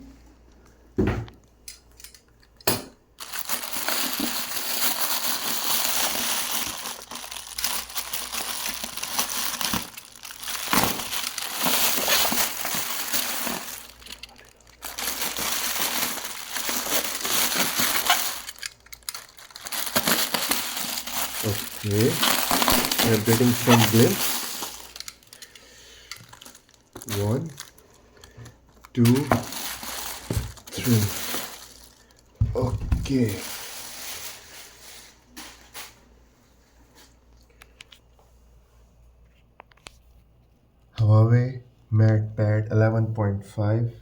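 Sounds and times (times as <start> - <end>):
wrapping material crinkling: 3.2 - 36.1.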